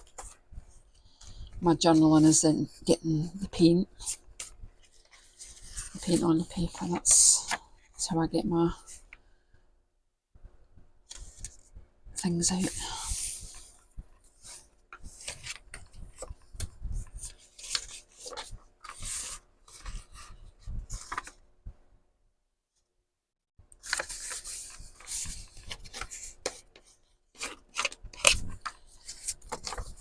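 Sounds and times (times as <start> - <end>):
paper rustling and shuffling: 0.0 - 2.4, 3.4 - 7.7, 11.1 - 11.7, 12.6 - 21.4, 23.8 - 30.0.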